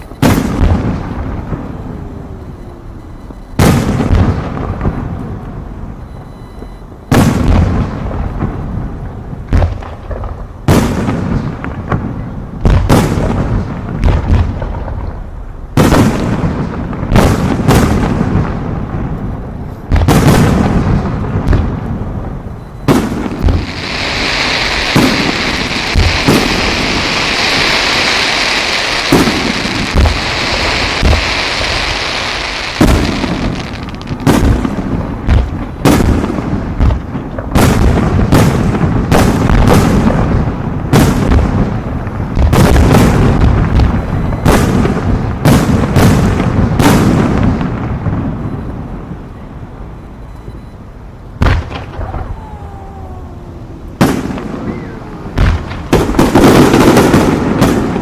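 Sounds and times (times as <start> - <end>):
fireworks booming bangs: 0.0 - 58.0
steady high hiss: 20.7 - 37.2.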